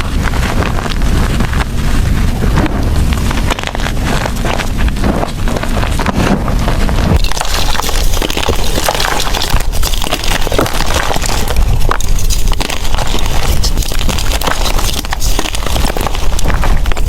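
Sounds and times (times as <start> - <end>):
chalk crunching and crackling: 0.0 - 17.0.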